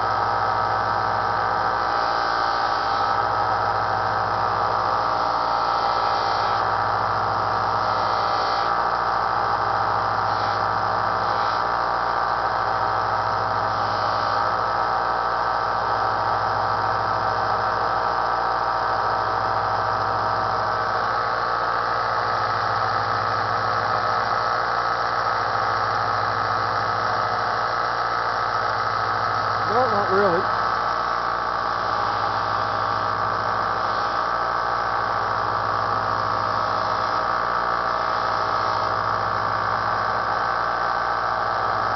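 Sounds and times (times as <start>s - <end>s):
belt sander motor humming: 0.0s - 41.9s
blade grinding on sanding belt: 0.9s - 8.9s, 9.7s - 11.8s, 13.6s - 14.5s, 29.3s - 35.1s.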